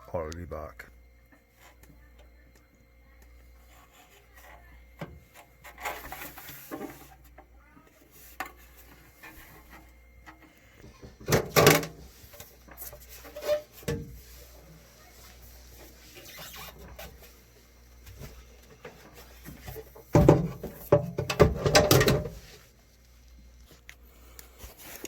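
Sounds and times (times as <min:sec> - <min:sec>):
handling knocks and scrapes: 0:03.6 - 0:22.8.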